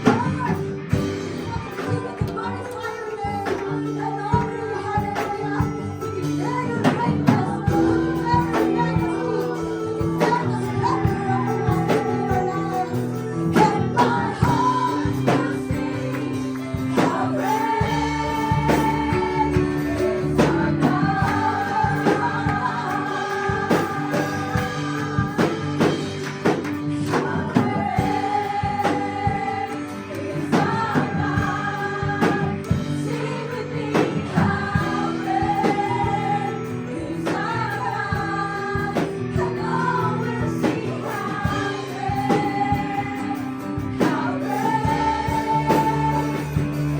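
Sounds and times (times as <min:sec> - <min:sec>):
band accompaniment: 0:00.0 - 0:46.9
group of singers: 0:00.0 - 0:46.9
percussion hits: 0:13.6 - 0:36.3.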